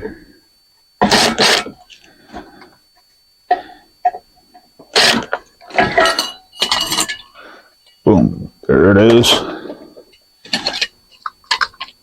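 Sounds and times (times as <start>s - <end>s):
metal parts clanking: 4.9s - 7.4s, 10.5s - 12.0s.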